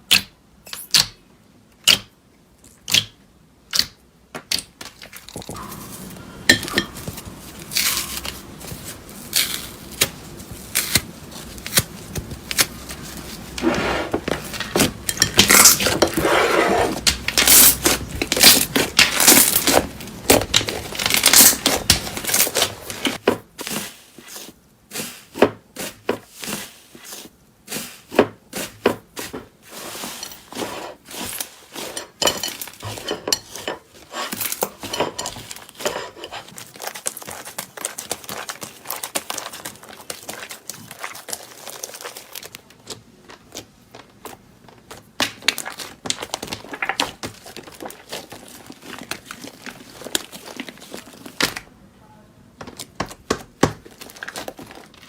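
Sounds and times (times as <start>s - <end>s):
slime crackling and popping: 7.2s - 13.6s, 17.0s - 24.4s, 36.5s - 51.7s.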